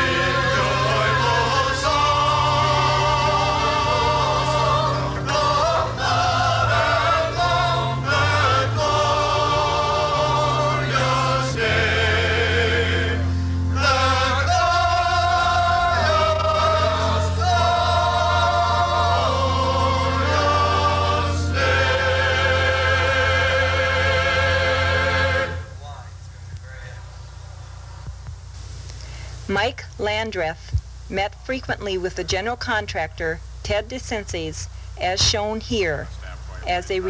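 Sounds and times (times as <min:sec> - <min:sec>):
choir singing a slow hymn: 0:00.0 - 0:25.8
low organ-like bass notes: 0:00.0 - 0:25.9.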